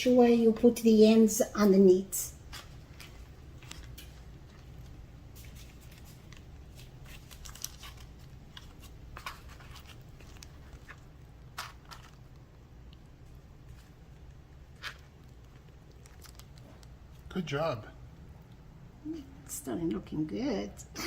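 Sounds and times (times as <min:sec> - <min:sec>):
low room hum: 0:00.0 - 0:21.0
dough rustling: 0:00.9 - 0:17.3.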